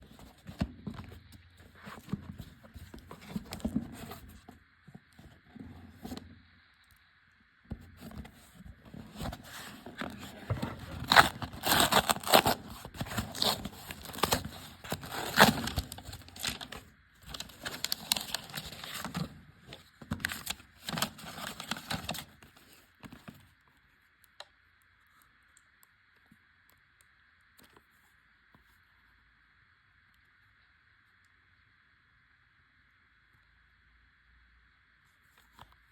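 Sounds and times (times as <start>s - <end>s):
plastic packaging tearing and crinkling: 9.0s - 19.4s, 20.0s - 22.8s.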